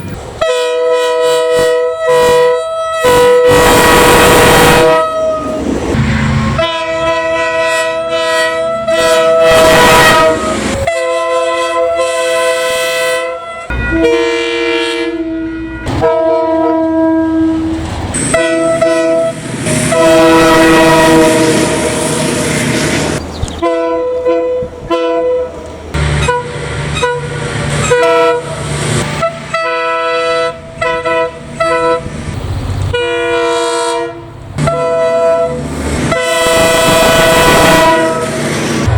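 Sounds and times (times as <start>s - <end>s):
train air horn blasts: 0.4s - 32.2s, 32.9s - 38.9s.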